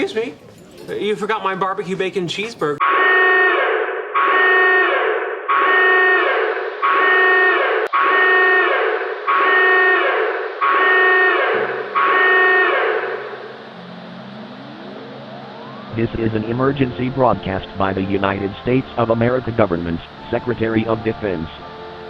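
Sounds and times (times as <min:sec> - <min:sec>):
pulsing electronic alarm tone: 0:02.8 - 0:22.0
low hum: 0:11.3 - 0:22.0.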